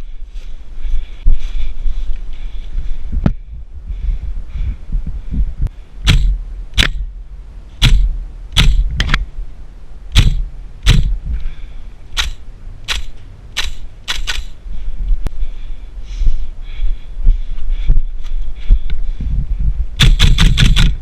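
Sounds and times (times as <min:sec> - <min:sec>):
low rumble: 0:00.0 - 0:21.0
airsoft gun shots: 0:06.0 - 0:07.1, 0:07.8 - 0:08.9, 0:10.1 - 0:11.2, 0:12.2 - 0:14.6, 0:20.0 - 0:21.0.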